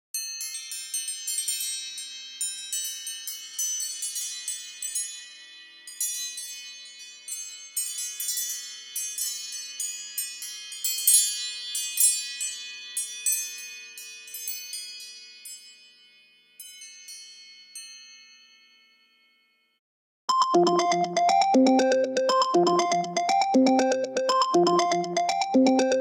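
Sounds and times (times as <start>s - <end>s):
phone ringtone chime notes: 20.3s - 26.0s.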